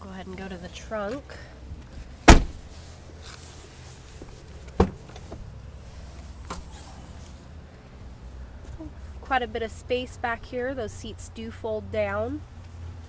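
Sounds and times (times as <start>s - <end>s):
car door slamming: 2.2s - 2.7s, 4.7s - 5.4s.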